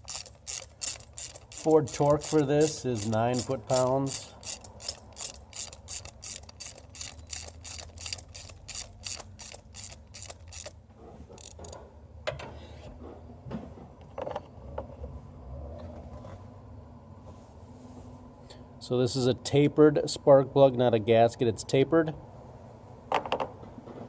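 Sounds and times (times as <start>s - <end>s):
socket ratchet clicking: 0.0s - 10.8s, 11.4s - 11.8s.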